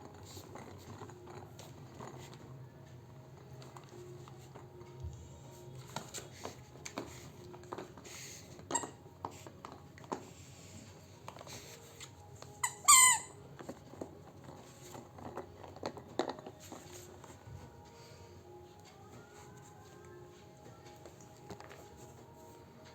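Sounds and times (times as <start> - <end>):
squeaky dog toy squeaking: 12.4 - 13.5.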